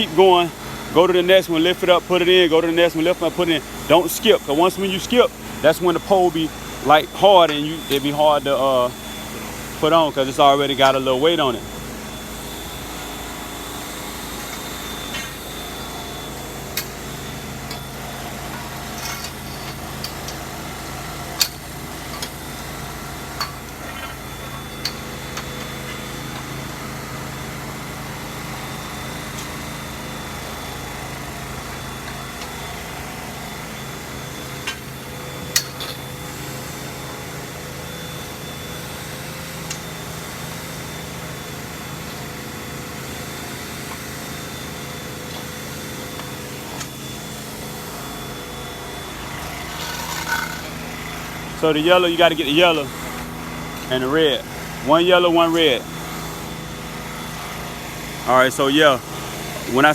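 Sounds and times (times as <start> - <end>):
steady motor hum: 0.0 - 59.9
metal poles clacking: 49.8 - 50.7.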